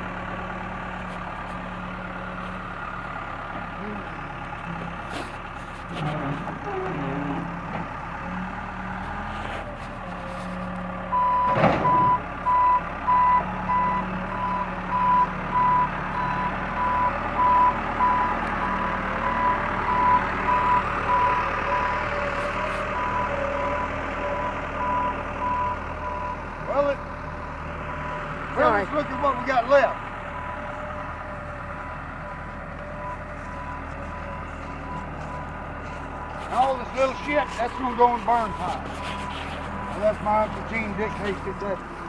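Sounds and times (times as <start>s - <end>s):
diesel engine running: 0.0s - 42.0s
reversing alarm beeping: 11.1s - 26.5s, 27.8s - 41.4s.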